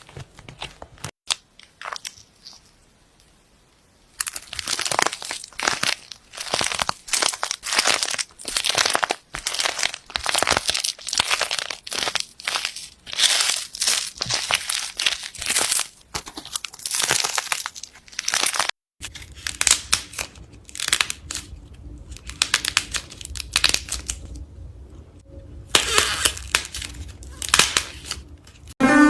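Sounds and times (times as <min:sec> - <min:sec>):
slime crackling and popping: 0:00.6 - 0:02.8, 0:04.1 - 0:24.4, 0:25.7 - 0:28.7
low hum: 0:20.2 - 0:29.0.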